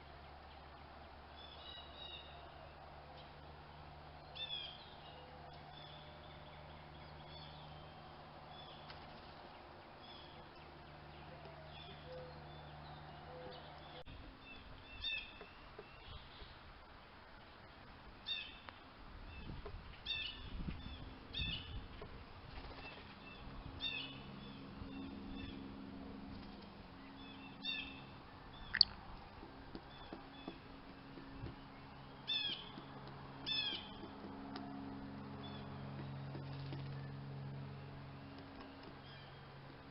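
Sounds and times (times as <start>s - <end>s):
birds chirping: 0.0s - 16.6s, 17.4s - 39.9s
sharp click: 28.7s - 29.0s.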